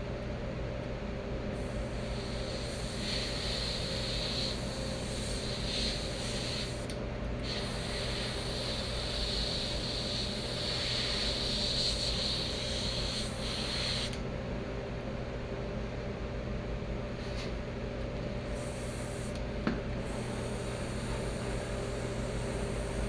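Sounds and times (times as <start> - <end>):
air compressor humming: 1.4 - 14.3, 17.2 - 23.0
airbrush spraying hiss: 1.6 - 14.2, 20.0 - 23.0.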